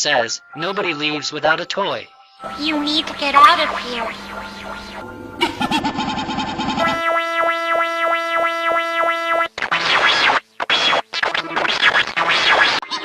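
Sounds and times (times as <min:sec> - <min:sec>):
pulsing synthesized tone: 0:02.4 - 0:07.2
distorted glitch noise: 0:09.6 - 0:13.0.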